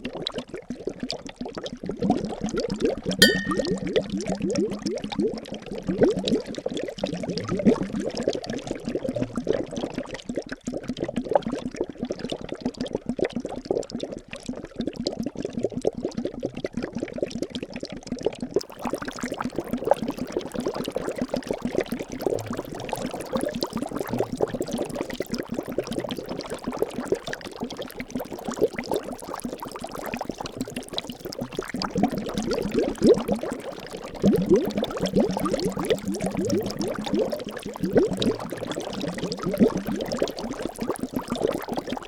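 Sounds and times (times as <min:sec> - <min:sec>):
liquid bubbling: 0:03.2 - 0:03.8, 0:18.6 - 0:42.0.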